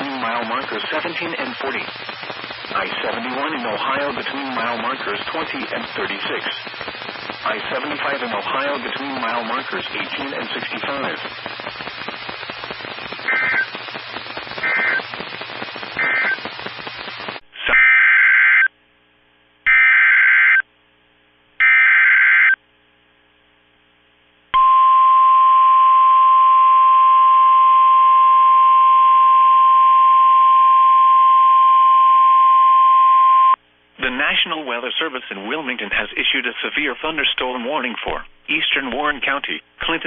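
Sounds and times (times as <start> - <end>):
data header bursts: 0.0 - 17.4
radio static hiss: 0.0 - 18.7, 33.9 - 40.0
short beeps: 24.6 - 33.6.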